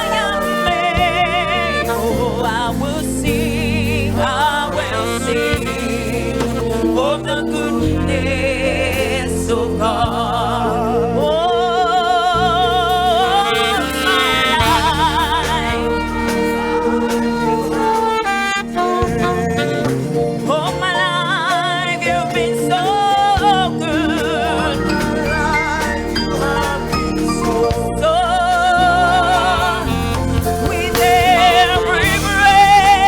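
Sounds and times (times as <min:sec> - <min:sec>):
keyboard chords and bass: 0:00.0 - 0:33.0
person singing with vibrato: 0:00.0 - 0:33.0.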